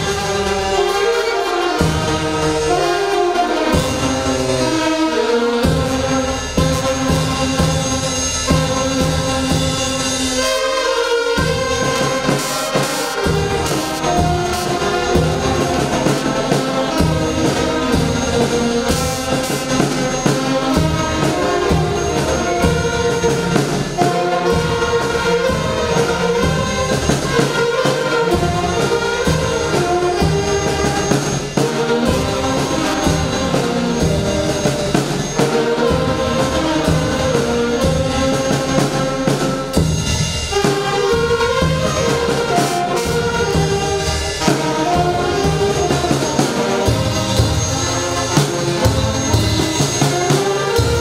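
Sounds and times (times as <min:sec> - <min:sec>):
instrumental music with beat: 0:05.8 - 0:29.2.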